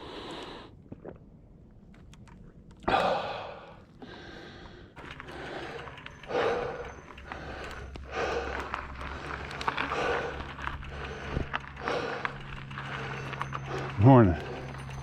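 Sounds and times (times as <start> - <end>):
person breathing hard: 2.8 - 14.8.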